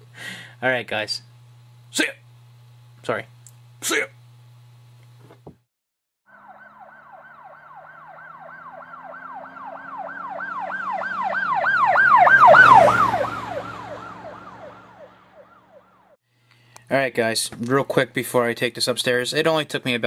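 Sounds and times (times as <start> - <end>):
emergency siren yelping: 6.3 - 16.2.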